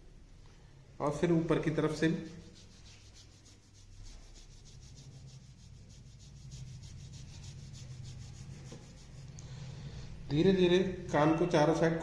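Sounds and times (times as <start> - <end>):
hands rubbing skin: 1.8 - 9.6.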